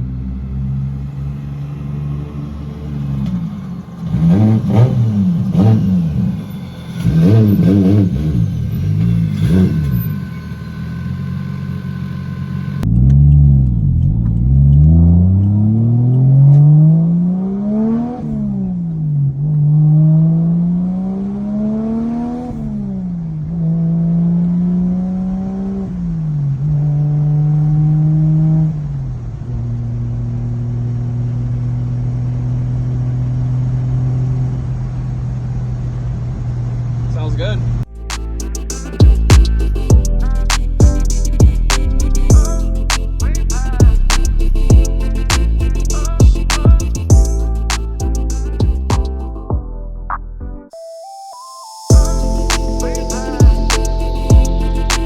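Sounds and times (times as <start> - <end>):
car accelerating through gears: 0.0 - 37.8
car engine idling and revving: 0.0 - 49.4.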